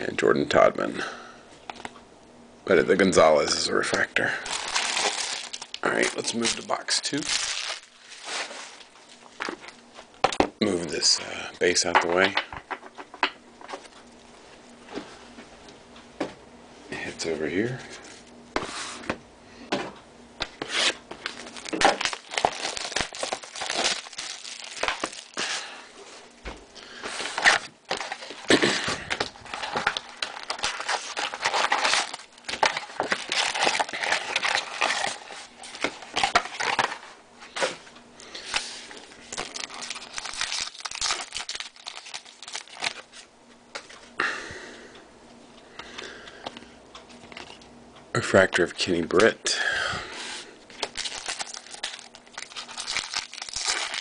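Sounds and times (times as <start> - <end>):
card pack wrappers tearing and crinkling: 4.4 - 9.4, 20.5 - 25.8, 27.0 - 37.0, 39.0 - 43.2, 50.7 - 54.0.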